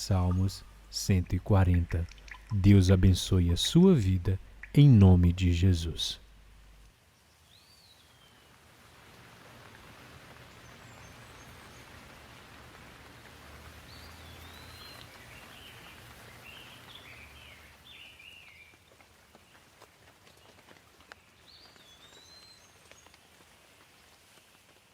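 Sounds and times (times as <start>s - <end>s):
birds chirping: 0.0s - 6.8s, 13.9s - 18.7s
faint steady rain: 0.0s - 24.9s.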